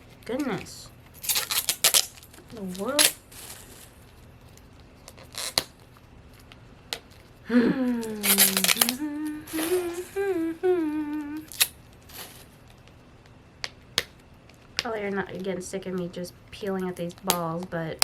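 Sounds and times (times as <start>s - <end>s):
woman groaning: 7.5s - 11.6s
woman humming: 7.5s - 11.7s
plastic capsule clicking and crackling: 7.9s - 9.7s, 11.4s - 18.0s.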